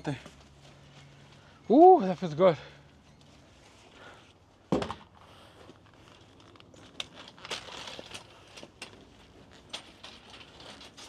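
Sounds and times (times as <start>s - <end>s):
light clicks and rustling: 5.6s - 11.0s.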